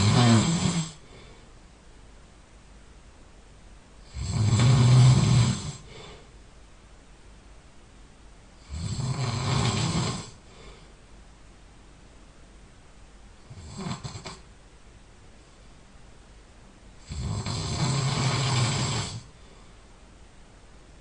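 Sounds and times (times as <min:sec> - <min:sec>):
person snoring loudly: 0:00.0 - 0:01.2, 0:04.0 - 0:06.2, 0:08.6 - 0:10.5, 0:13.4 - 0:14.5, 0:17.0 - 0:19.4.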